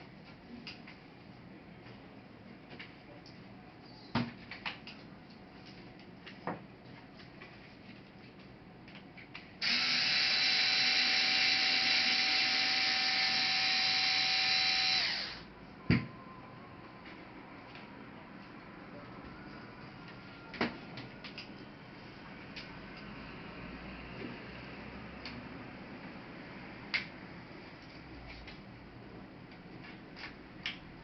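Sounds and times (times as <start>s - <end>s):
small electric motor whirring: 9.6s - 15.5s.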